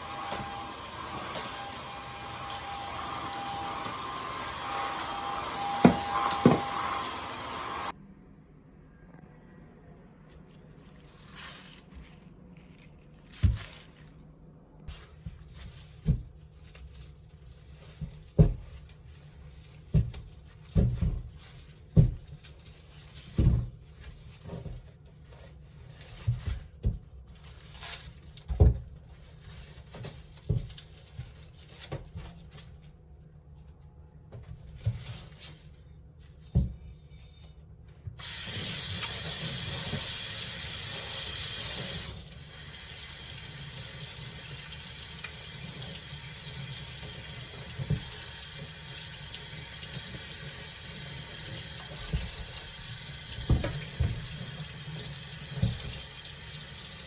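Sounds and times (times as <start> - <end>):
tap running water into sink: 43.9 - 56.9.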